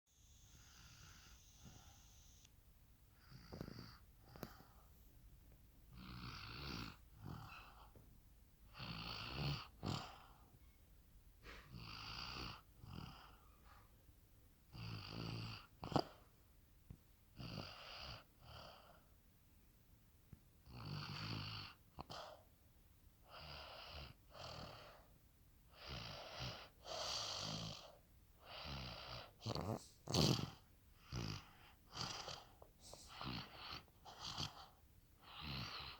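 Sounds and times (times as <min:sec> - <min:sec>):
rhythmic snoring: 0:00.1 - 0:02.5, 0:03.2 - 0:04.6, 0:05.9 - 0:08.0, 0:08.7 - 0:10.5, 0:11.4 - 0:13.8, 0:14.7 - 0:16.3, 0:17.4 - 0:19.0, 0:20.6 - 0:22.4, 0:23.3 - 0:25.1, 0:25.7 - 0:35.9.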